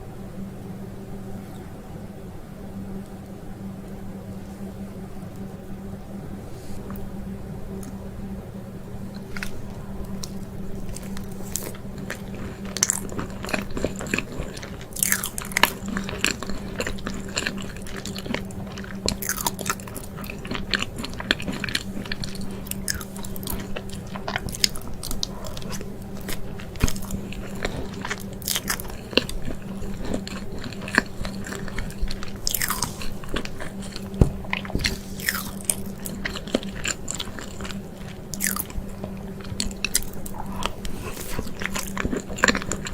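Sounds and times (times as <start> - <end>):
faint steady hum: 0.0 - 42.9
biting and chewing: 9.0 - 42.9.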